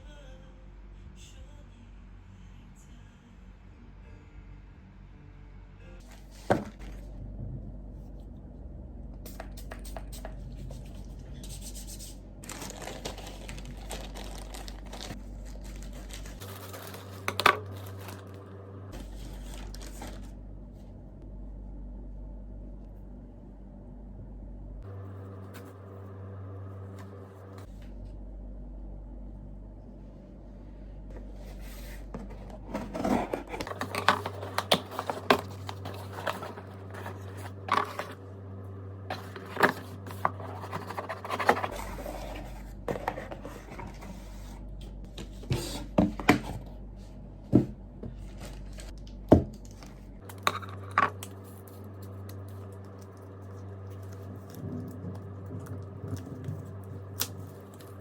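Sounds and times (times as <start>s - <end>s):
objects scraping and tapping: 31.2s - 38.2s, 39.1s - 46.7s, 49.6s - 56.9s.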